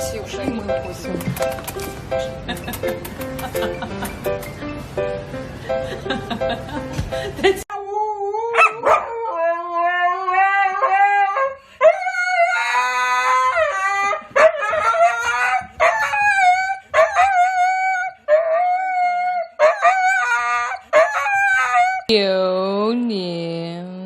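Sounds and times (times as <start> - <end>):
dog howling: 7.8 - 22.1.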